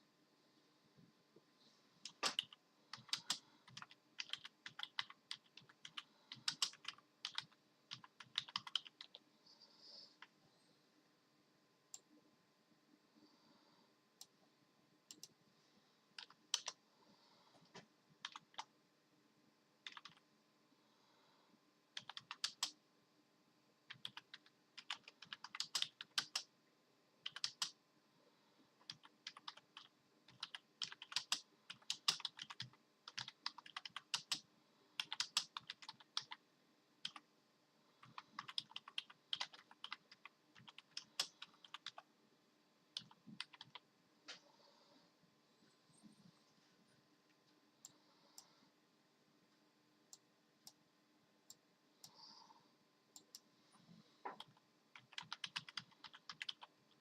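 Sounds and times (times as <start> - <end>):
keyboard keys clicking: 2.0 - 9.2, 16.2 - 16.8, 19.8 - 20.2, 22.0 - 22.8, 23.9 - 26.5, 27.2 - 27.7, 28.8 - 34.4, 35.0 - 36.4, 38.0 - 42.0, 43.0 - 43.8, 54.3 - 56.7.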